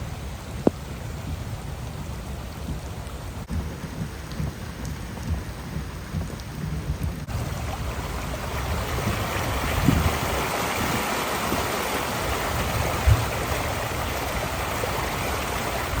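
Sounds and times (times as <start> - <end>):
floodwater rushing: 0.0 - 16.0
dull thumps: 3.5 - 7.3.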